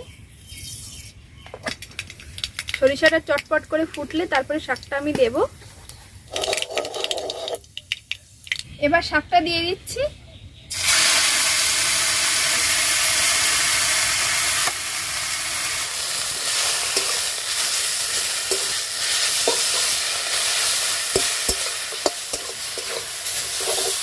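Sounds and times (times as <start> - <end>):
greens sizzling in hot oil: 10.7 - 24.0.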